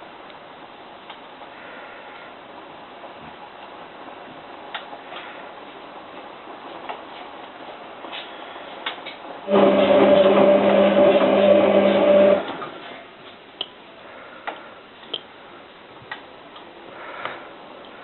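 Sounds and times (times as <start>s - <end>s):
washing machine motor humming: 9.4s - 12.9s.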